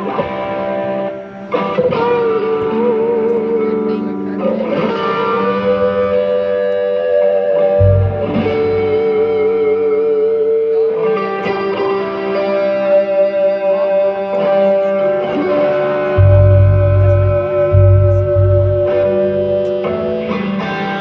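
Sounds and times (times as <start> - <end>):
electric guitar ringing notes: 0.0 - 21.0
deep bass note: 7.8 - 9.4, 16.2 - 19.7.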